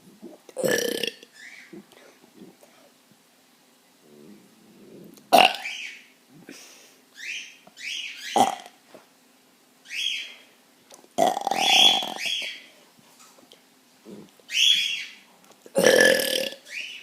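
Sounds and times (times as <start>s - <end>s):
boy burping: 0.3s - 1.2s, 5.2s - 5.6s, 8.4s - 8.7s, 11.2s - 12.2s, 15.7s - 16.6s.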